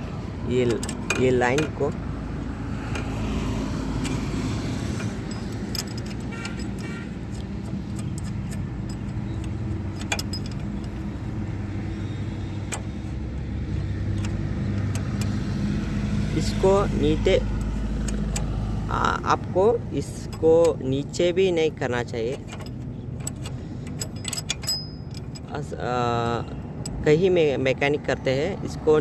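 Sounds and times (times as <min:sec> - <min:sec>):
vehicle engine running: 0:00.0 - 0:27.1
light metallic clinks: 0:05.0 - 0:11.3, 0:22.2 - 0:27.1.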